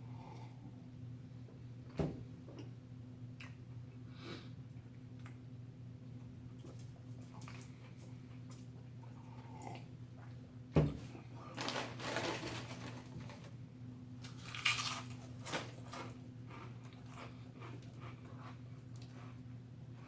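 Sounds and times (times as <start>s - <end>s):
person chewing: 15.8s - 20.0s.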